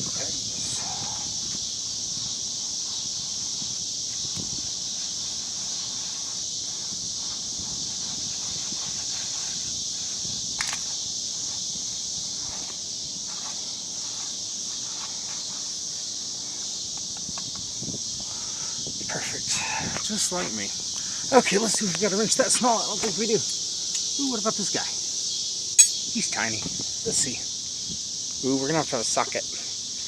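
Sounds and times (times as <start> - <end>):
insect chorus: 0.0 - 30.0
sharp click: 10.6 - 10.9.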